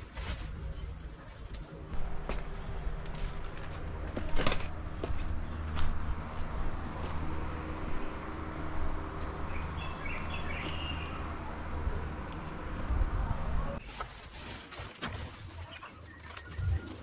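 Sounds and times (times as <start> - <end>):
steady low hum: 1.8 - 13.8
bird chirping: 6.4 - 13.8.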